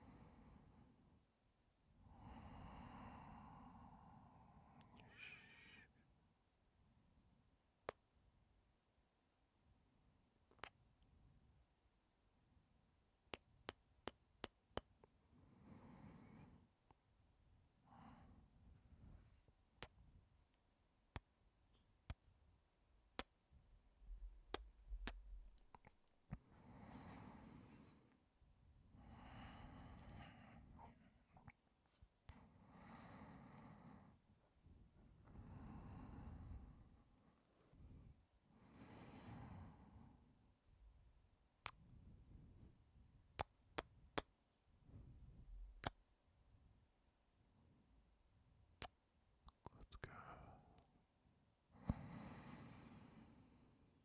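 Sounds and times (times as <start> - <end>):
kissing lip smacks: 10.5 - 10.8, 24.2 - 26.0, 43.4 - 44.3, 45.7 - 46.0, 48.8 - 50.1
faint breaths: 26.4 - 28.2, 28.9 - 31.5, 32.3 - 34.3, 35.2 - 40.3, 51.7 - 54.0.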